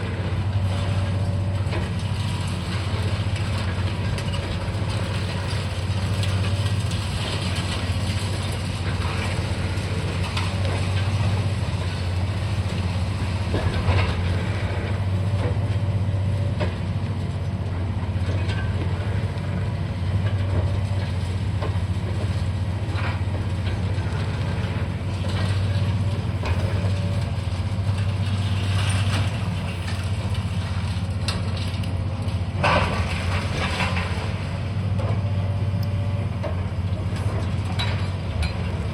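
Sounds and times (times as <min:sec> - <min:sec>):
diesel excavator engine running: 0:00.0 - 0:38.9
rubble crunching and clanking: 0:00.0 - 0:38.9.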